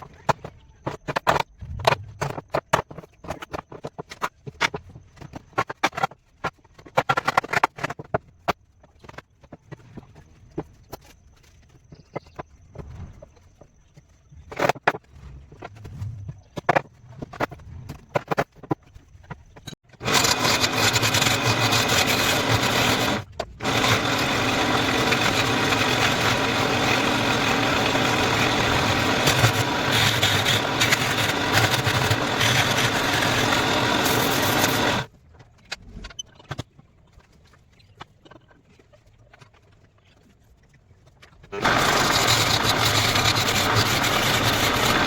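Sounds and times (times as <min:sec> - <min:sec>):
power tool motor running: 0:20.0 - 0:35.1, 0:41.6 - 0:45.0.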